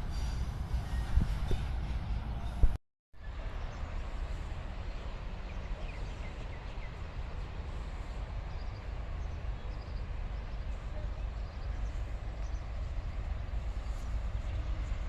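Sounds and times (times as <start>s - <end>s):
wind rumble on microphone: 0.0s - 2.8s.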